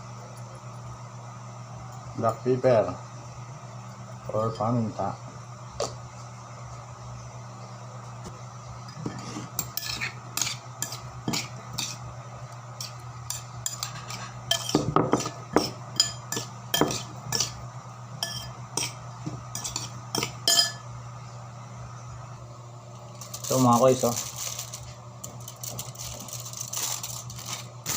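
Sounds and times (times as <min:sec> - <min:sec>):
spoon clinking and scraping in bowl: 0:09.2 - 0:12.0, 0:12.8 - 0:17.6, 0:18.2 - 0:20.8.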